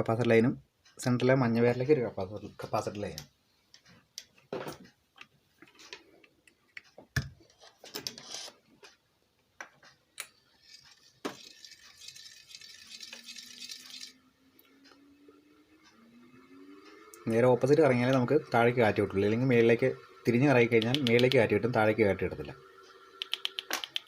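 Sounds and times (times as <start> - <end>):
ceiling fan motor humming: 10.2 - 24.0
clicks and knocks of hands working: 23.2 - 24.0.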